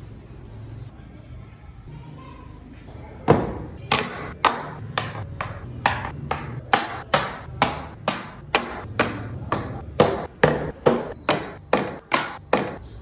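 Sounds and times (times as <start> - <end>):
hammer striking chisel on wood: 3.3 - 12.8.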